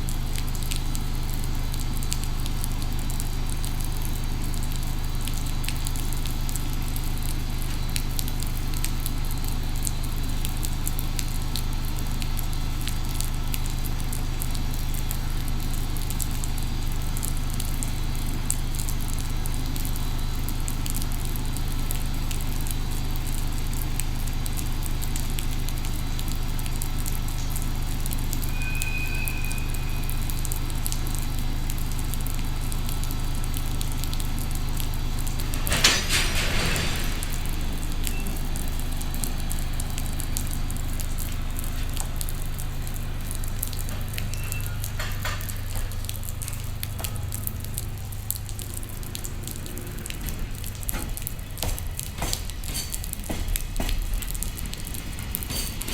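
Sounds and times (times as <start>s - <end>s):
electric locomotive hum: 25.4s - 55.9s
brief high tone: 28.5s - 30.2s.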